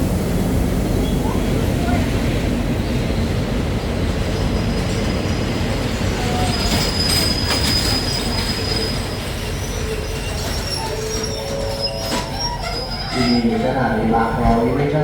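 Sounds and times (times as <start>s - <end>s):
train wheels rumbling on rails: 0.0s - 15.0s
high wheel squeal: 6.1s - 14.6s.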